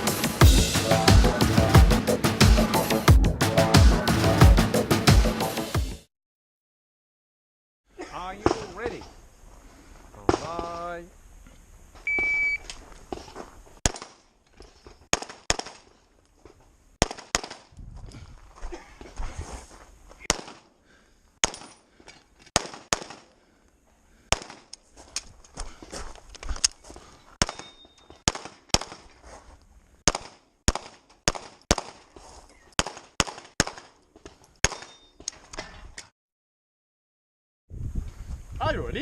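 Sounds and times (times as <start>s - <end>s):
pistol shots: 22.6s - 23.3s, 27.4s - 29.0s.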